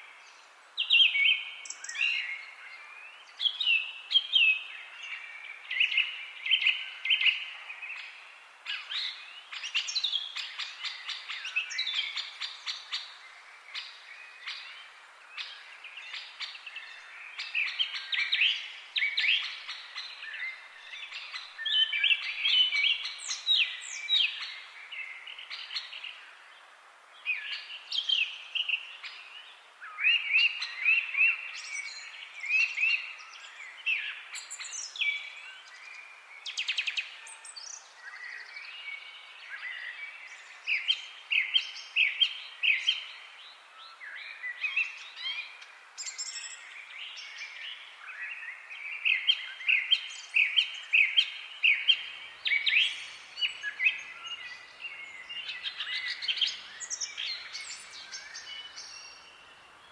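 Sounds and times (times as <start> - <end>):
songbirds chirping and trilling: 0.0 - 59.9.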